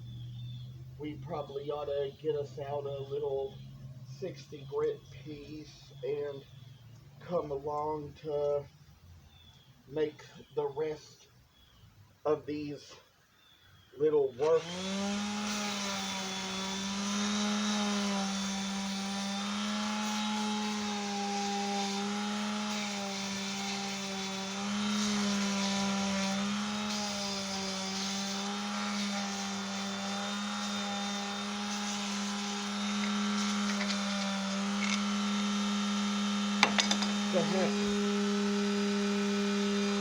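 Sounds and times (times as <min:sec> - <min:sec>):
electric sander on wood: 0:14.4 - 0:40.0.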